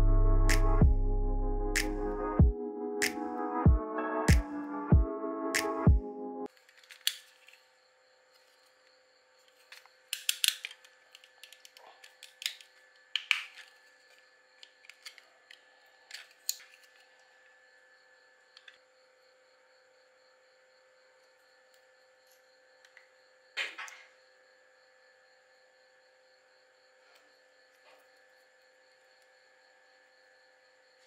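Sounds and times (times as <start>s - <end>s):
clicks of small parts and tools: 6.5s - 7.6s, 9.4s - 17.1s, 18.6s - 18.8s.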